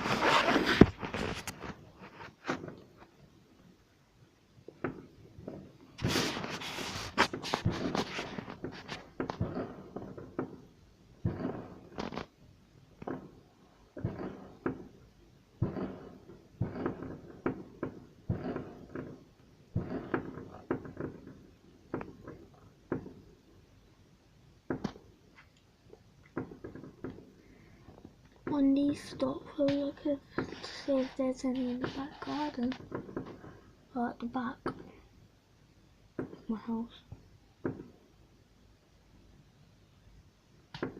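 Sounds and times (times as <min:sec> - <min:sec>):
fireworks banging: 0:00.0 - 0:03.2, 0:04.6 - 0:12.4, 0:13.0 - 0:23.5, 0:24.6 - 0:25.4, 0:26.3 - 0:35.1, 0:36.1 - 0:36.9, 0:37.6 - 0:38.1.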